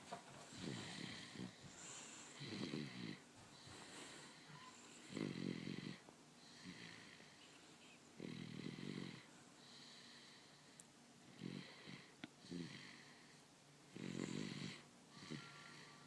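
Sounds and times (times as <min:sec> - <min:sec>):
soft rattling snores: 0:00.5 - 0:07.3, 0:08.2 - 0:10.2, 0:11.3 - 0:13.1, 0:13.9 - 0:16.0.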